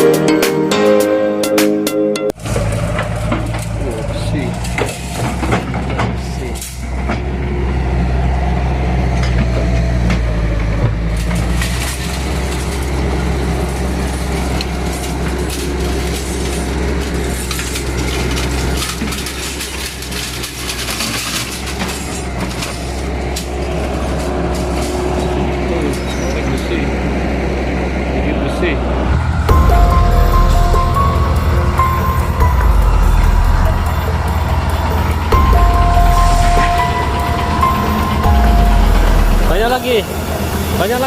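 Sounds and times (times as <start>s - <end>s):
diesel engine humming: 2.3s - 41.0s
metal knocks and clanks: 2.4s - 7.4s, 29.5s - 39.8s.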